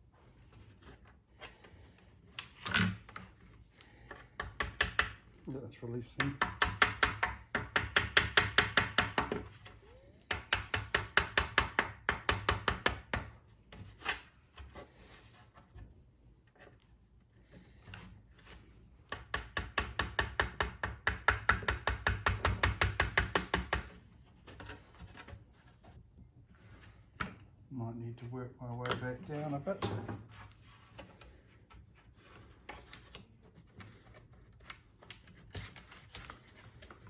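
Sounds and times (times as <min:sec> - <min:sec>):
rapid tapping on a mold: 0:04.2 - 0:05.3, 0:06.1 - 0:09.6, 0:10.3 - 0:13.4, 0:19.1 - 0:24.0.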